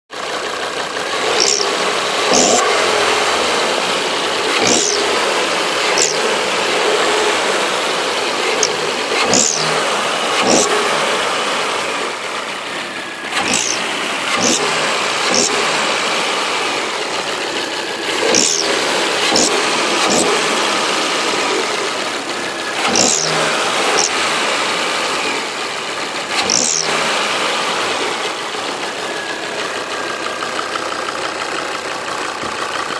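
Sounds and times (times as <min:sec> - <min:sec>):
car engine running: 0:00.1 - 0:32.9
sharp high-pitched clicks: 0:01.4 - 0:01.7, 0:06.0 - 0:06.2, 0:13.4 - 0:13.8, 0:26.5 - 0:26.8.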